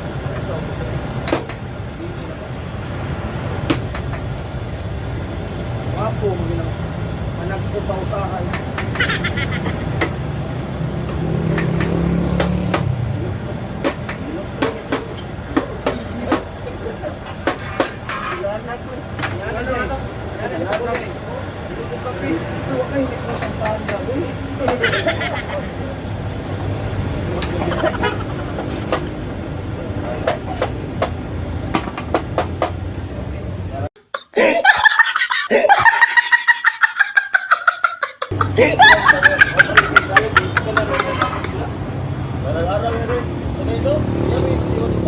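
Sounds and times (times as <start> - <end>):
sharp taps or knocks: 11.0 - 13.0.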